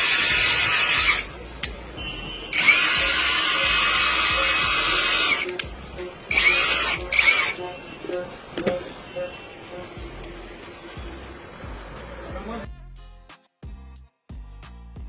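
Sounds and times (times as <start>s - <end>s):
impact wrench running: 0.0s - 1.3s, 2.5s - 5.6s, 6.3s - 7.6s
high-pitched whine: 2.7s - 10.1s.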